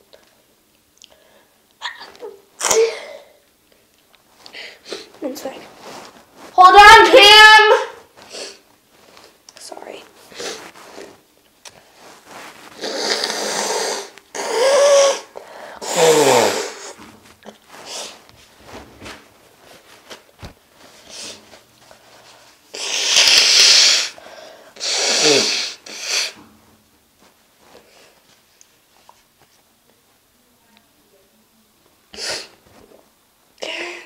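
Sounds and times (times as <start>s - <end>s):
woman blowing her nose: 2.6s - 3.4s, 10.3s - 11.2s, 12.0s - 18.2s, 22.7s - 24.2s, 24.8s - 26.4s, 32.1s - 32.8s.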